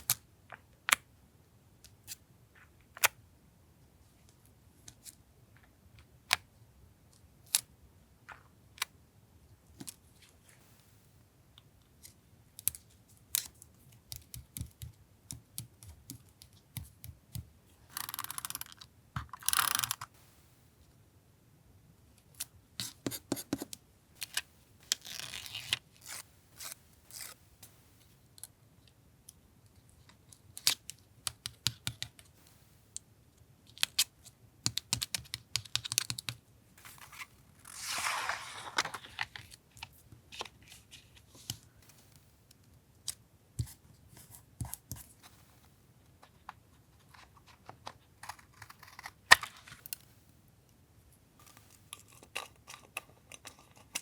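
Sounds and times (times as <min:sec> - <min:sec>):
paper rustling: 0:36.8 - 0:41.6.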